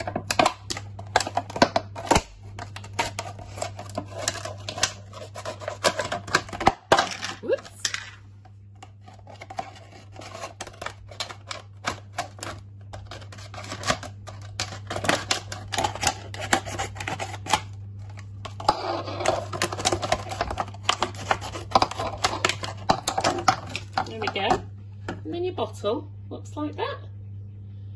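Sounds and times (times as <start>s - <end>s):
scissors cutting plastic bottle: 0.0s - 7.8s, 9.0s - 17.6s, 18.6s - 24.4s
steady low hum: 0.0s - 27.9s.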